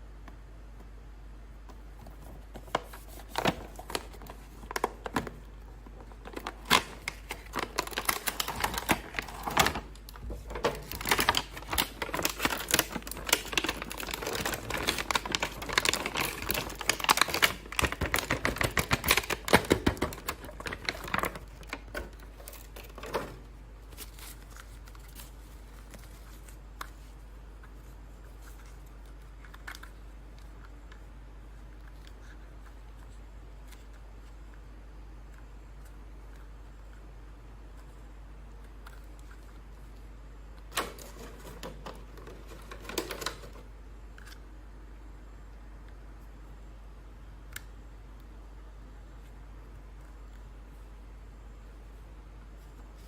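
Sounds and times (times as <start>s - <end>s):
plastic packaging clicks and crackles: 1.6s - 34.6s, 38.6s - 44.4s.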